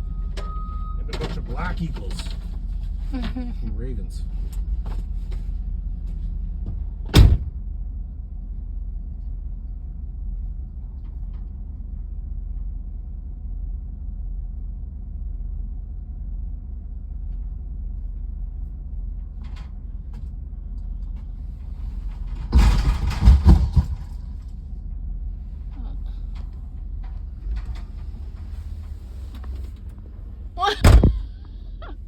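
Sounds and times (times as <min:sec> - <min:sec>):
vehicle idling: 0:00.0 - 0:32.0
banging and scraping: 0:21.8 - 0:24.5.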